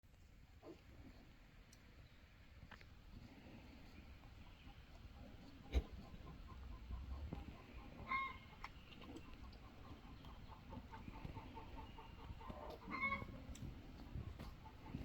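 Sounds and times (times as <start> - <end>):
faint bird calls: 3.6 - 13.4.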